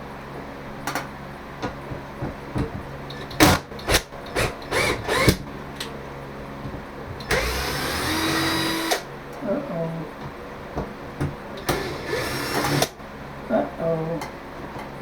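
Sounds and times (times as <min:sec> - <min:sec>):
power drill trigger bursts: 0:03.4 - 0:05.4, 0:07.3 - 0:09.1, 0:11.6 - 0:13.0.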